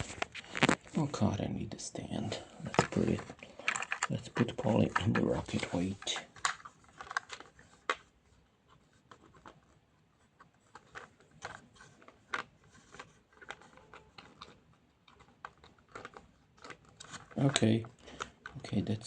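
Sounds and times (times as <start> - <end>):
plastic toy pieces clicking: 2.8 - 5.3, 12.3 - 18.6.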